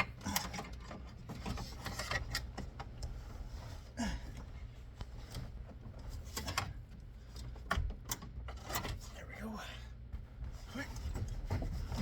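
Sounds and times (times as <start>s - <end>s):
hands clicking and rubbing wiring: 0.0s - 9.2s
steady low hum: 0.0s - 12.0s.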